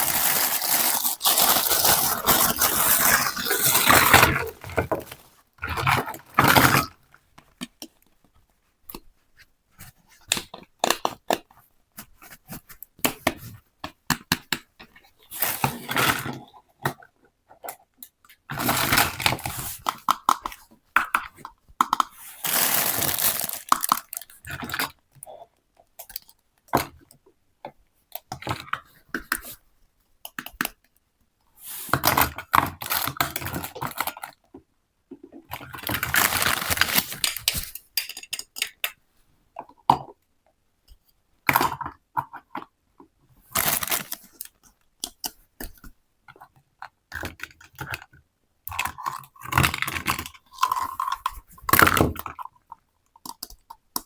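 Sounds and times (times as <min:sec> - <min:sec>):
plastic toy pieces clattering: 0:00.0 - 0:05.1, 0:22.4 - 0:24.3, 0:35.6 - 0:38.8
packaging crinkling and tearing: 0:00.0 - 0:06.9, 0:22.3 - 0:24.9, 0:35.7 - 0:37.8, 0:43.5 - 0:44.5.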